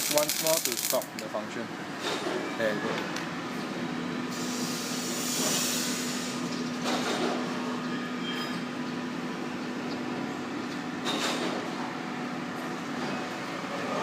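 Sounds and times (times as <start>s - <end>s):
welder hissing: 0.0s - 1.2s, 4.3s - 6.4s.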